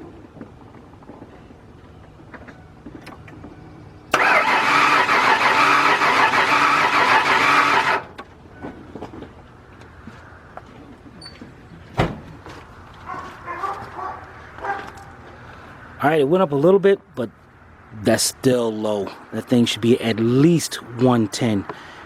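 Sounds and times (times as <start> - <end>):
starter cranking engine: 4.1 - 8.2.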